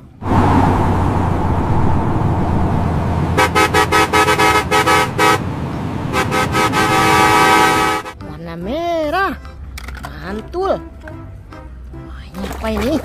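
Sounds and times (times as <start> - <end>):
steady noisy rumble: 0.0 - 8.2
multi-tone bus horn honking: 3.3 - 8.2.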